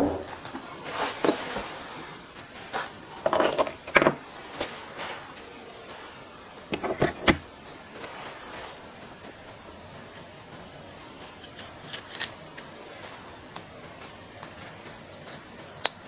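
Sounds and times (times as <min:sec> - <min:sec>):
hand tools knocking and clicking: 0:06.7 - 0:07.4.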